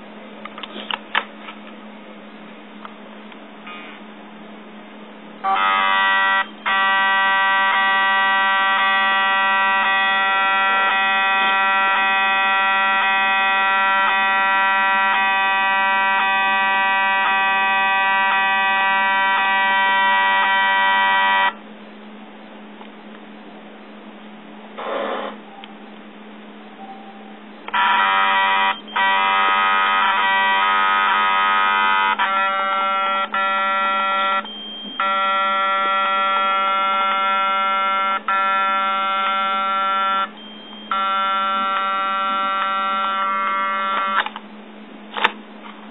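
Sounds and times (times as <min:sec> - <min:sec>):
flash zoom motor buzzing: 0:40.9 - 0:44.3.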